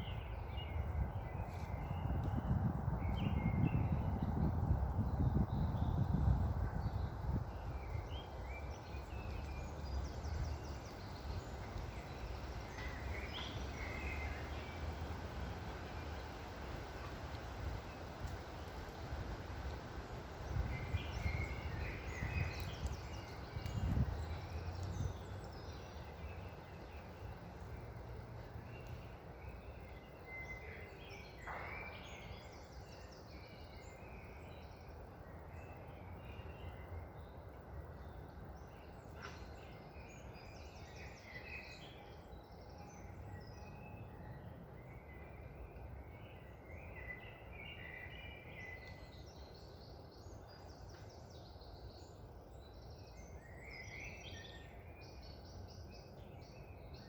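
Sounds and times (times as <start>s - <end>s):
small birds chirping: 0.0s - 44.2s
low wind rumble: 0.0s - 57.0s.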